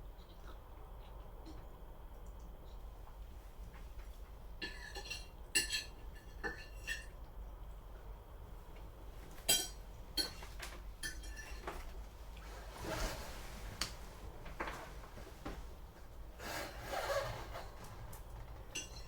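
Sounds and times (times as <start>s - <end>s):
dishes and cutlery clinking: 4.6s - 7.2s, 9.3s - 12.0s, 18.6s - 19.0s.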